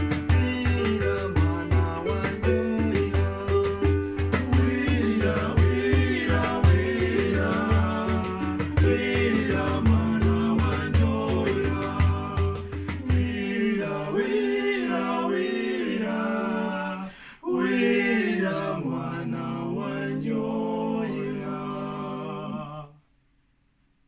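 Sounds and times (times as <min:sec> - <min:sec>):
beats: 0:00.0 - 0:13.7
voices singing unaccompanied: 0:00.0 - 0:23.1.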